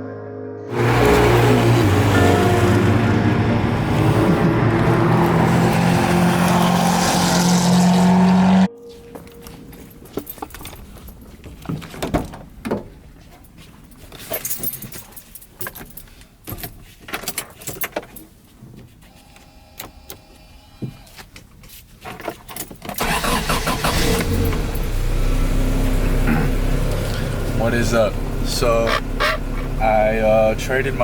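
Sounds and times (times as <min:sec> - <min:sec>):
car engine running: 0:00.7 - 0:08.7, 0:23.1 - 0:31.0
keys jangling: 0:09.1 - 0:12.4, 0:13.2 - 0:18.4.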